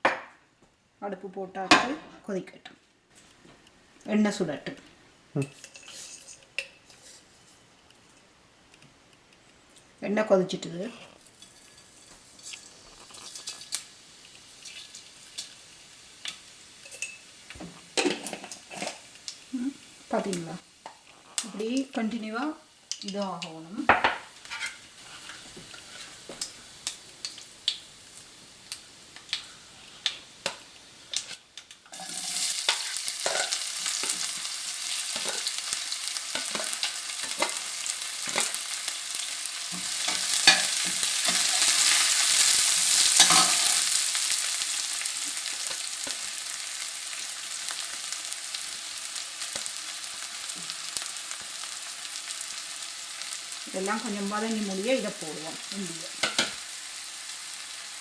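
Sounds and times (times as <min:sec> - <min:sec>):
food sizzling in oil: 0:04.1 - 0:08.7, 0:09.8 - 0:58.0
hot oil clicking: 0:22.9 - 0:23.6, 0:26.3 - 0:27.9, 0:28.7 - 0:44.7.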